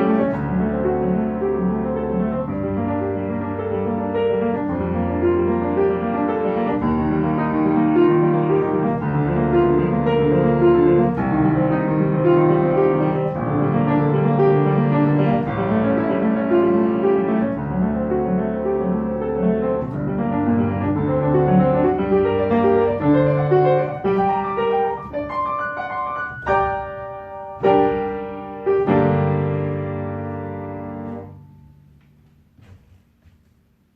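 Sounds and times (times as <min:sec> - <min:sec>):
loud piano chords ringing: 0:00.0 - 0:32.6
piano run of notes: 0:00.0 - 0:33.6.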